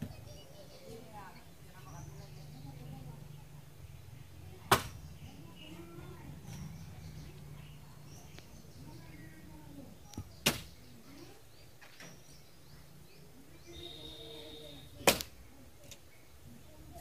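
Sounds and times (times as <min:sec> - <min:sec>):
blade chopping wood: 0:04.7 - 0:05.0, 0:10.4 - 0:10.7, 0:15.0 - 0:15.3.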